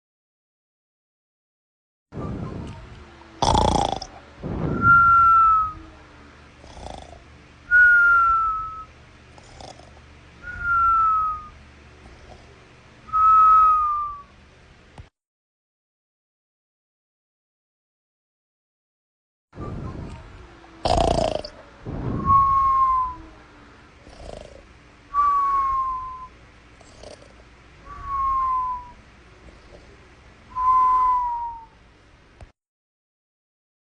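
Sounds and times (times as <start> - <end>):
whistling snore: 4.7 - 5.8, 6.7 - 11.6, 20.8 - 21.5, 22.2 - 23.3, 25.2 - 29.0, 30.5 - 31.8.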